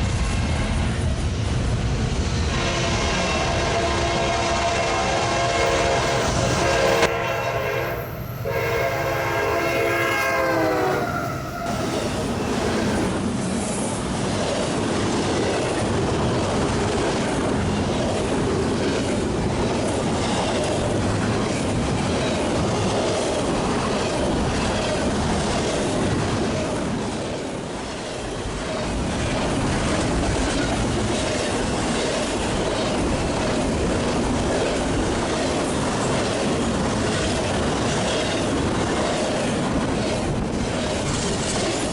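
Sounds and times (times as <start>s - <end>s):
train wheels rumbling on rails: 0.0s - 41.9s
locomotive horn chord: 2.6s - 13.1s.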